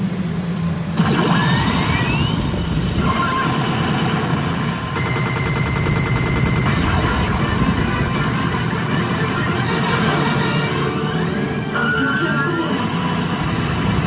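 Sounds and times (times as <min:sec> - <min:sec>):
rapid electronic crackle: 0:01.0 - 0:14.0
steady high electronic tones: 0:04.9 - 0:14.0.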